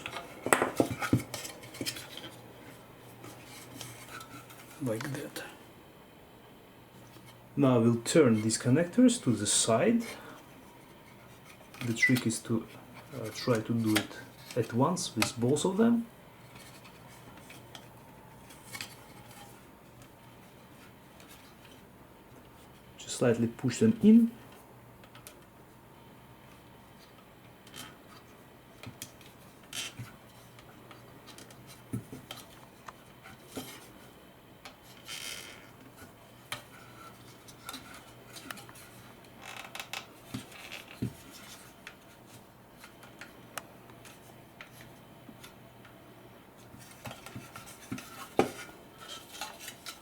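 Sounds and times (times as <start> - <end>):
plastic parts clicking and scraping: 46.6 - 50.0.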